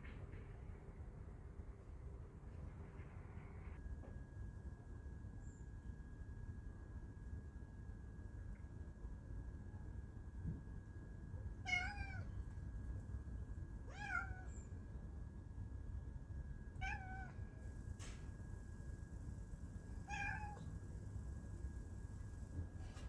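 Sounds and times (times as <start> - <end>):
faint high whine: 0.0 - 23.0
cat meowing: 11.6 - 12.4, 13.9 - 14.6, 16.8 - 17.4, 20.0 - 20.7.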